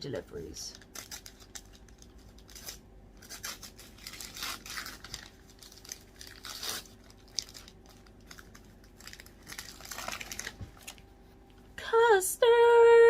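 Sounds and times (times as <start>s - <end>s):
wrapping paper tearing: 0.7s - 11.1s.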